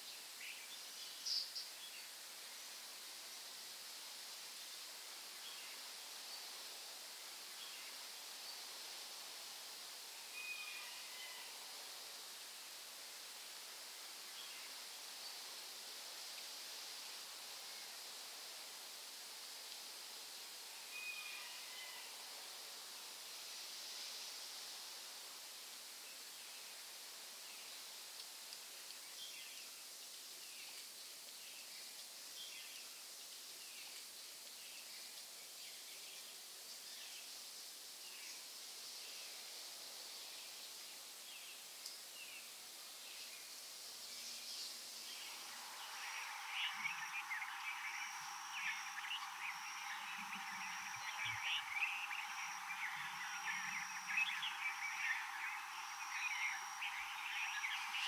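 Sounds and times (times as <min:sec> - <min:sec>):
steady hiss: 0:00.0 - 0:58.0
faint chirping calls: 0:44.0 - 0:58.0
chorus of chirping and croaking: 0:45.3 - 0:58.0
pulsing high note: 0:45.5 - 0:58.0.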